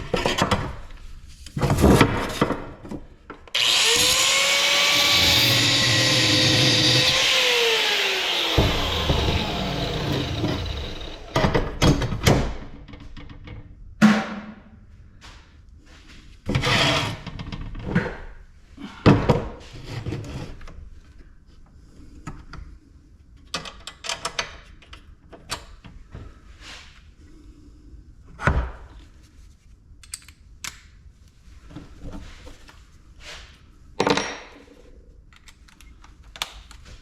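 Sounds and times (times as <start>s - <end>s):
power tool running: 3.6s - 11.8s.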